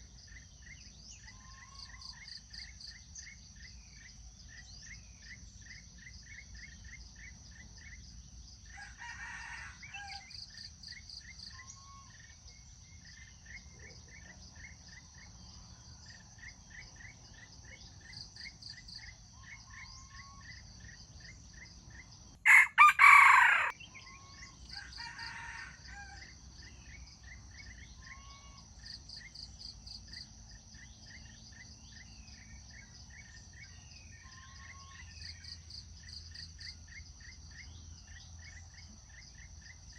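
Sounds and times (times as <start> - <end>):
crickets and insects chirping: 0.0 - 39.9
rooster crowing: 8.8 - 10.3, 22.4 - 26.2.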